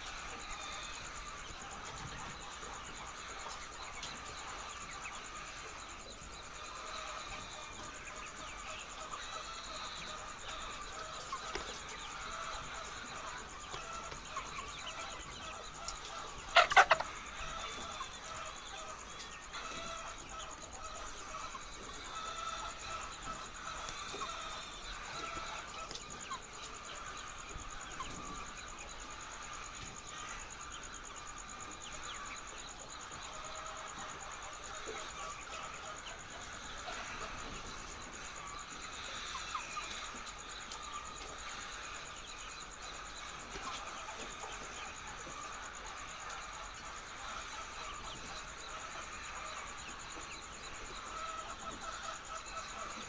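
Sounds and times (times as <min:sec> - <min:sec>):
chickens clucking: 0:00.0 - 0:53.0
chicken squawk: 0:08.6 - 0:30.4.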